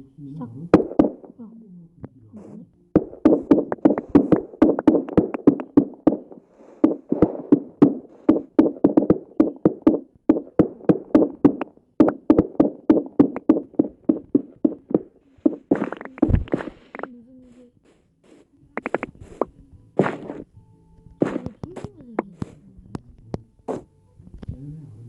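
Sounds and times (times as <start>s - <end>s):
rapid knocking on hard surface: 0.8s - 1.3s, 3.0s - 17.1s.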